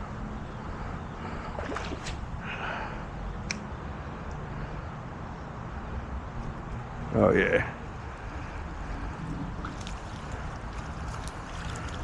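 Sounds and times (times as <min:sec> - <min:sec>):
wind rumbling on microphone: 0:01.2 - 0:02.7.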